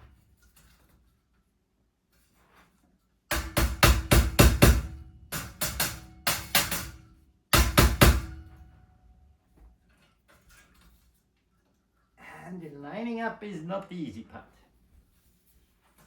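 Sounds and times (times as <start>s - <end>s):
mallet striking cage: 3.3s - 8.7s.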